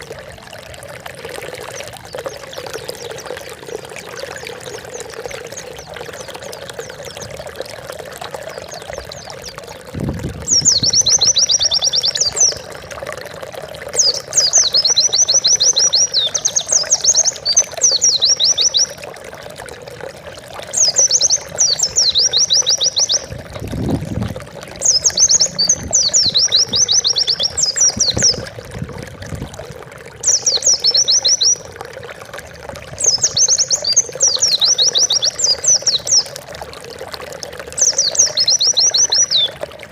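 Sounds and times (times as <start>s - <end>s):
water-like rushing background: 0.0s - 39.9s
bird twittering trills: 10.4s - 12.8s, 13.9s - 19.0s, 20.7s - 24.1s, 24.8s - 28.5s, 30.2s - 31.7s, 33.0s - 36.4s, 37.8s - 39.6s.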